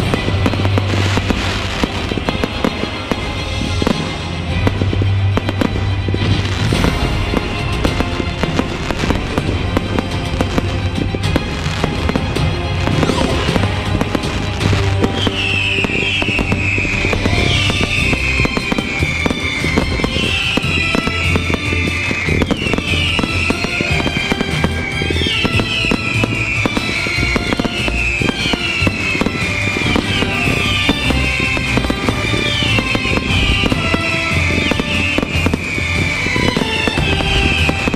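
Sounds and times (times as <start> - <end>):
fireworks crackling and banging: 0.0 - 37.9
music: 0.0 - 37.9
falling firework whistles: 14.6 - 37.9.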